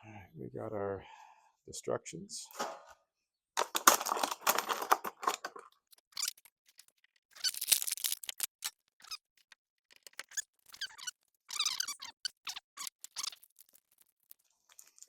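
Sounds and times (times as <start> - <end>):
paper and packaging rustling: 3.6 - 15.0.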